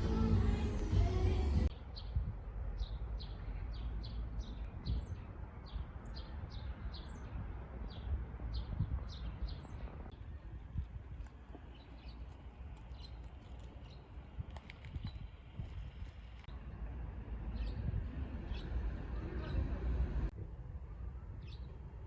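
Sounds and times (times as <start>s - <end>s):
background music: 0.0s - 1.7s
low steady rumble: 0.0s - 1.7s
small birds chirping: 0.0s - 16.8s, 17.4s - 20.3s, 21.1s - 21.9s.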